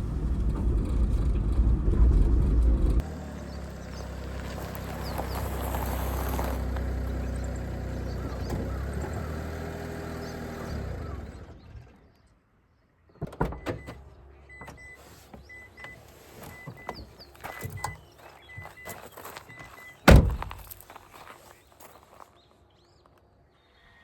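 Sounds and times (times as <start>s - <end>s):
car engine running: 0.0s - 11.9s
car door knocks and clicks: 20.0s - 20.5s.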